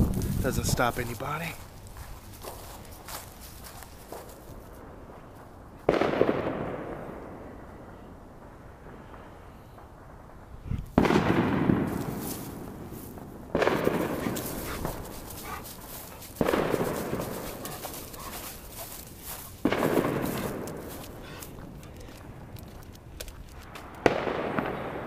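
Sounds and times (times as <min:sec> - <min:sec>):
firework crackles: 0:08.5 - 0:25.0
loud firework booms: 0:09.8 - 0:15.0, 0:16.4 - 0:17.6, 0:19.6 - 0:21.2, 0:24.0 - 0:25.0.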